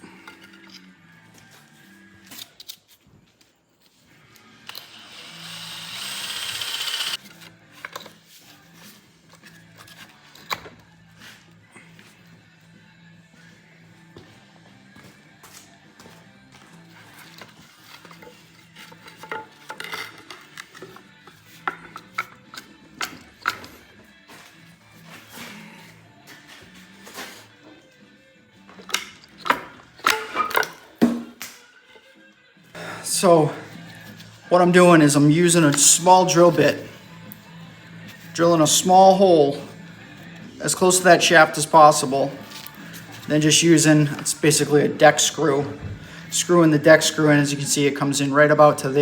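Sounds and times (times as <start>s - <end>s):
power tool running: 4.6s - 7.2s.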